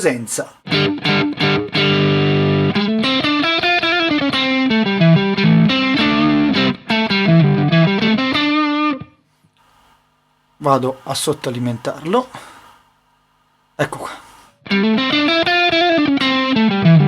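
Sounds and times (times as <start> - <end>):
overdriven electric guitar: 0.6 - 9.2, 14.6 - 17.0.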